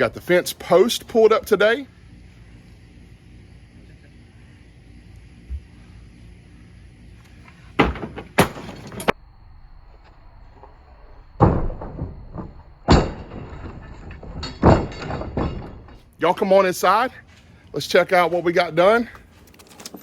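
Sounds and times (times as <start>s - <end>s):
door knocks and clatters: 7.8s - 9.1s, 11.4s - 15.9s.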